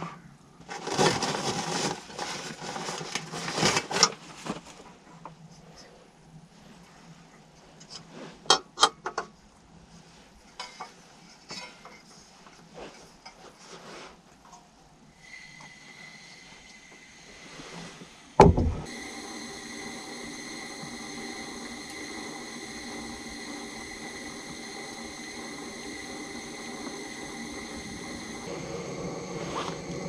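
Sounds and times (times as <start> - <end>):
steady hiss with thin tone: 0.0 - 30.0
loud deep thump: 18.4 - 18.9.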